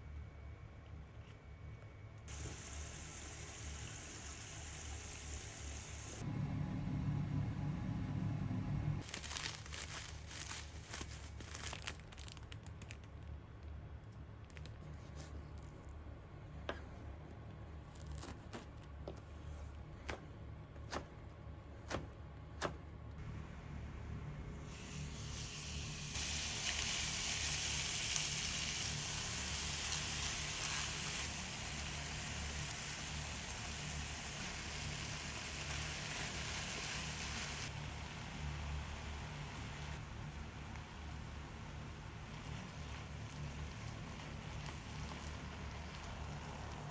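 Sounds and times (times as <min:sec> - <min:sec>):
low steady hum: 0:00.0 - 0:11.3, 0:13.2 - 0:26.8
food sizzling in a frying pan: 0:02.3 - 0:06.2, 0:24.6 - 0:40.0, 0:42.2 - 0:46.9
low hum: 0:05.7 - 0:09.0
plastic packaging crinkling: 0:09.0 - 0:13.4.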